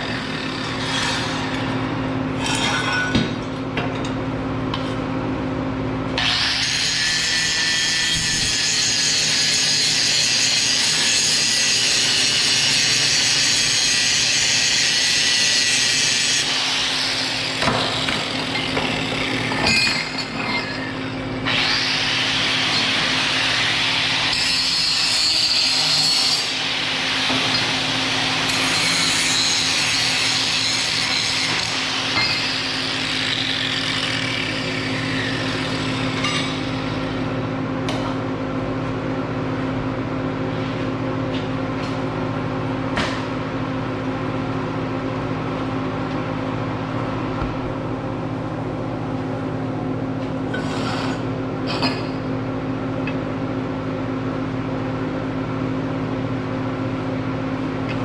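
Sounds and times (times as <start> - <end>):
harsh metal cutting noise: 0.0 - 3.1, 6.2 - 37.3.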